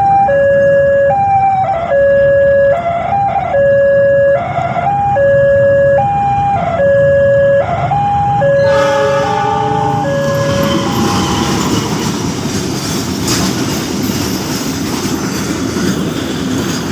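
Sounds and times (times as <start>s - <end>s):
level-crossing warning siren: 0.0s - 13.5s
train passing: 7.6s - 16.9s
chord of several tones: 8.4s - 12.5s.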